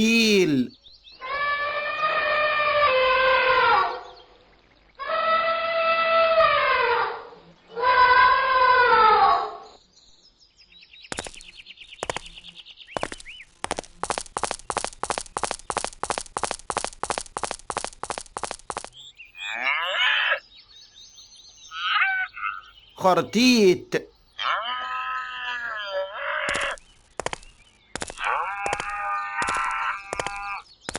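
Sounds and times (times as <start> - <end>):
short warbling animal calls: 19.4 - 20.4.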